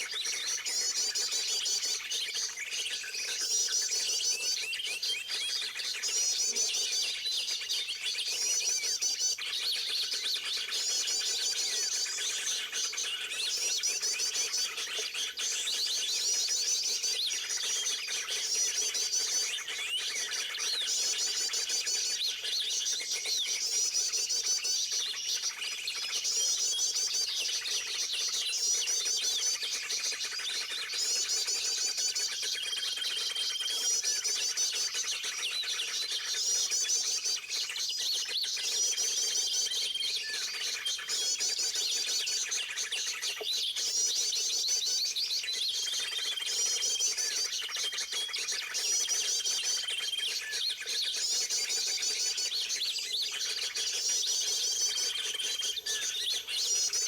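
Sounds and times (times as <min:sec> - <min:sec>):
small birds chirping: 0:39.7 - 0:57.0.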